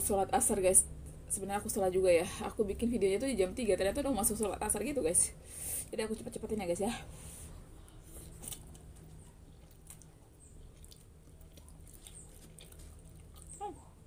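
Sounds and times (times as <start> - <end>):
low steady hum: 0.0 - 14.0
person chewing noodles: 7.5 - 14.0.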